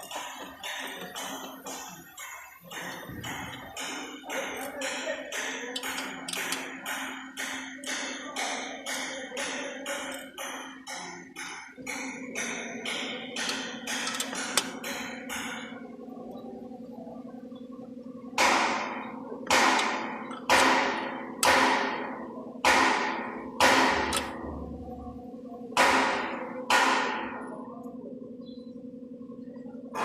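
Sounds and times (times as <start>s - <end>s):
hammer striking metal: 0.0s - 15.8s, 18.4s - 24.7s, 25.8s - 27.4s
steady hum: 0.0s - 30.0s.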